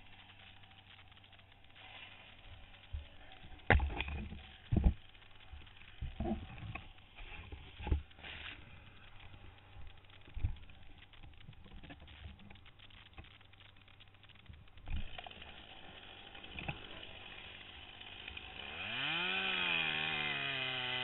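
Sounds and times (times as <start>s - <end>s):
faint steady hum: 0.0s - 18.7s
irregular knocks and scrapes: 1.8s - 12.6s.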